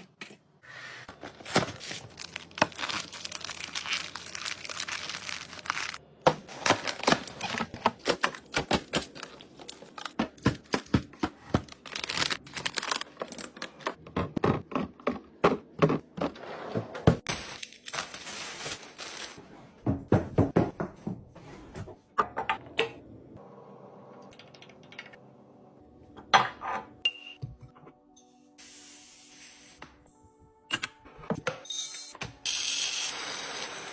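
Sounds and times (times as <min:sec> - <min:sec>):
household items being handled: 0:00.0 - 0:22.6.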